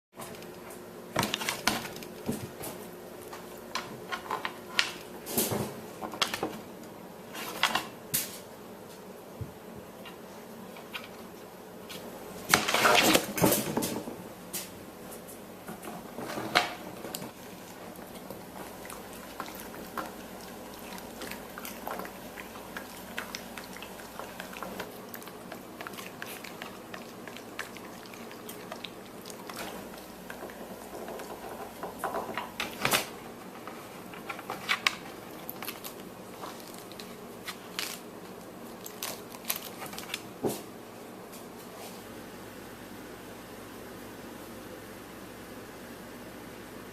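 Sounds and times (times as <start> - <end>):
dog chewing cabbage crunches: 17.3 - 31.7.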